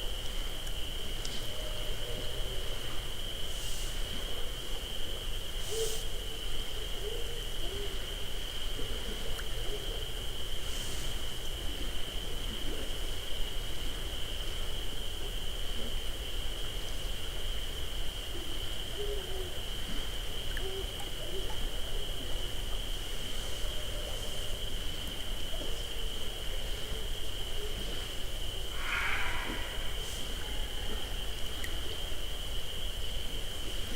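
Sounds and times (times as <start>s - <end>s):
crickets trilling: 0.0s - 33.9s
steady low hum: 0.0s - 33.9s
faint low wavering animal calls: 1.3s - 3.1s, 5.1s - 11.2s, 18.3s - 32.2s
soft hisses: 3.4s - 4.2s, 10.6s - 11.4s, 27.7s - 32.1s.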